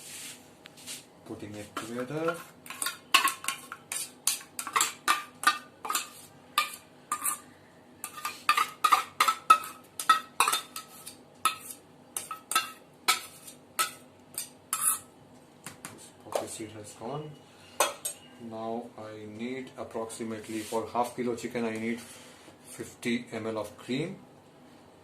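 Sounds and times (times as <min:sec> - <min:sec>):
spoon clinking and scraping a bowl: 0:02.2 - 0:15.1.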